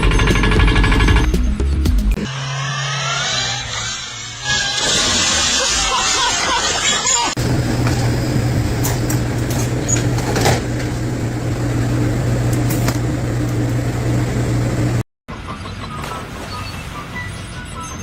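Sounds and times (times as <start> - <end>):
motor humming: 2.2 - 15.0.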